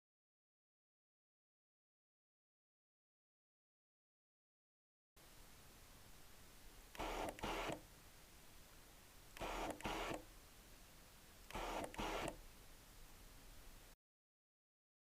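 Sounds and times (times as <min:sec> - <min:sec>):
autofocus motor whirring: 0:06.9 - 0:07.8, 0:09.4 - 0:10.3, 0:11.5 - 0:12.4.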